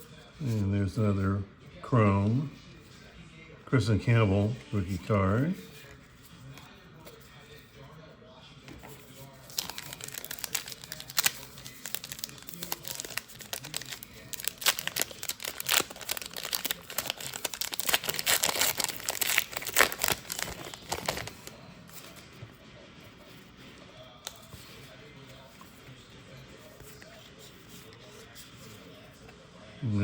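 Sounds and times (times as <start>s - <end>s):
wrapper crinkling and tearing: 9.4s - 22.1s.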